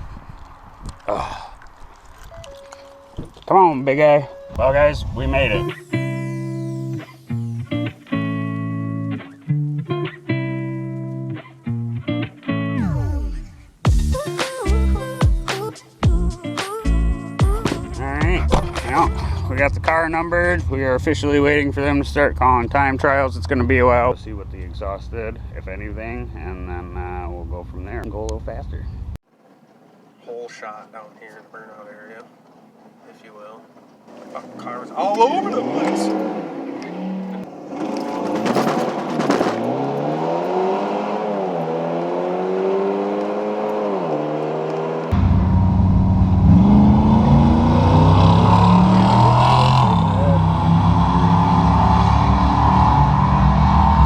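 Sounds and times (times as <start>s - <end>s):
wavering melody line: 2.4s - 11.3s
beat-driven song: 4.3s - 19.5s
deep bass hits: 13.9s - 15.4s, 17.4s - 20.0s, 45.1s - 51.6s
car engine accelerating hard: 34.4s - 54.0s
rapid clatter: 37.8s - 39.6s.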